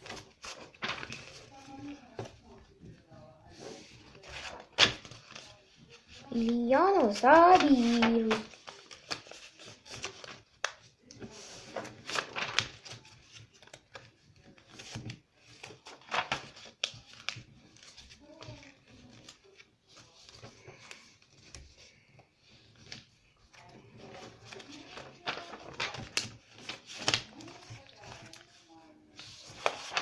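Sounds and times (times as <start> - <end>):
paper rustling and crinkling: 0.0 - 30.0.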